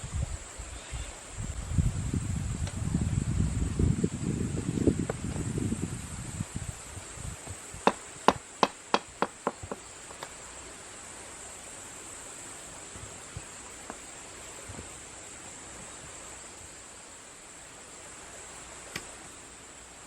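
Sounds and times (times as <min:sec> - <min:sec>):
high insect drone: 0:00.0 - 0:20.0
sharp knocks: 0:07.8 - 0:10.2.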